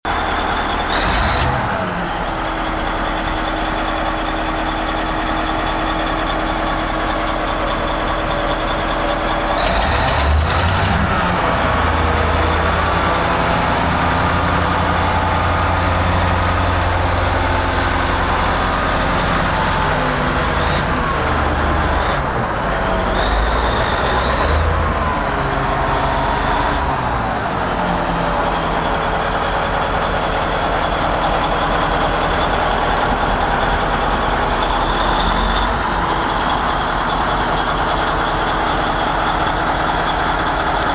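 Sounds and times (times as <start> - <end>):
dump truck diesel engine running: 0.0 - 40.9.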